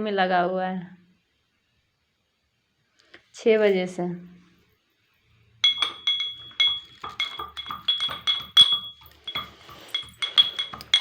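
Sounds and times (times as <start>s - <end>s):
metal spoon clinking in a pan: 5.6s - 11.0s.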